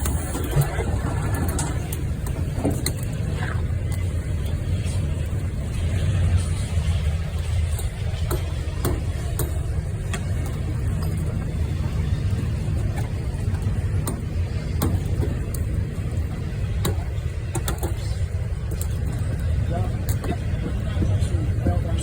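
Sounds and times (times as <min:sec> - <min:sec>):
steam engine rumbling: 0:00.0 - 0:22.0.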